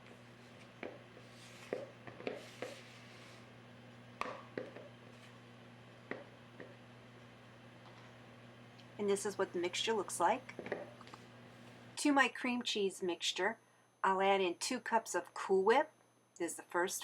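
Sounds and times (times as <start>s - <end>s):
spatula scraping mixing bowl: 0.0s - 3.5s.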